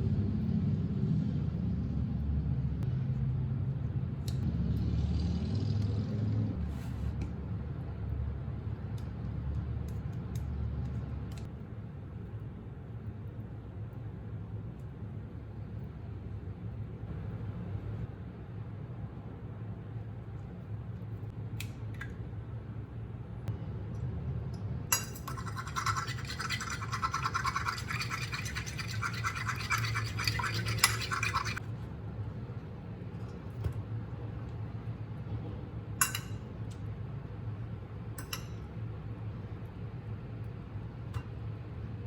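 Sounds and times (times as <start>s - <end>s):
steady low hum: 6.5s - 42.0s
rapid scrubbing strokes: 25.4s - 31.6s.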